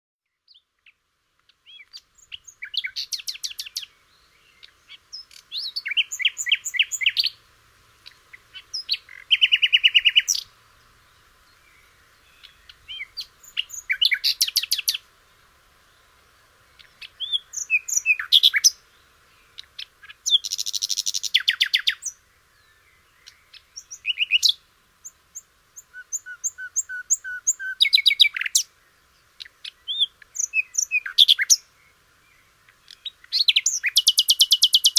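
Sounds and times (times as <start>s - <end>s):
bird chirps and trills: 16.7s - 18.8s, 19.4s - 31.6s, 32.4s - 34.9s.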